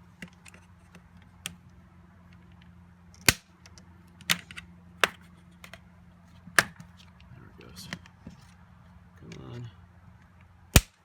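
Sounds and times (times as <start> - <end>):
plastic clips snapping: 10.8 - 11.0.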